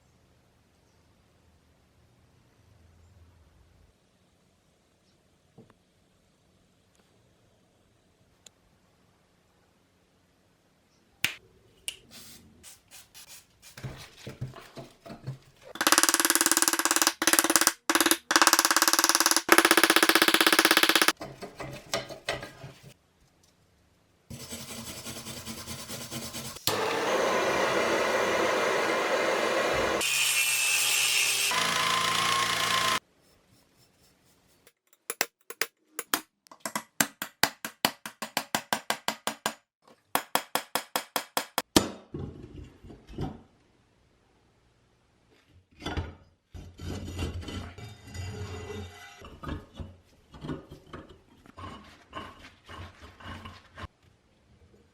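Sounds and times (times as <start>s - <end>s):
quick filing strokes: 24.3s - 26.8s
power tool whining: 26.6s - 33.0s.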